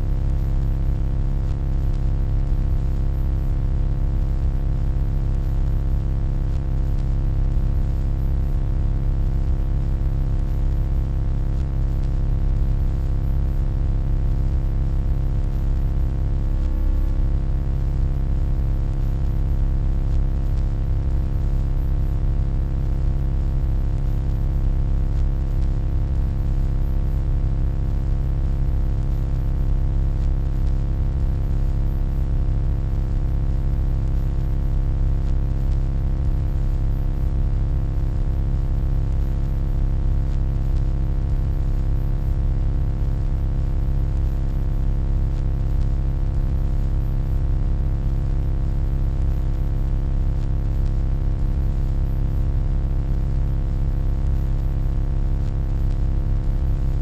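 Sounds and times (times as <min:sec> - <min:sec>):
deep electronic hum: 0:00.0 - 0:00.5, 0:13.7 - 0:21.5.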